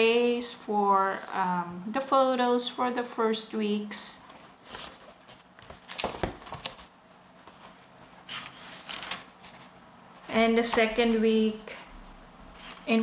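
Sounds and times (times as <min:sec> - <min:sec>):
paper pages rustling: 0:04.3 - 0:09.8, 0:10.8 - 0:13.0.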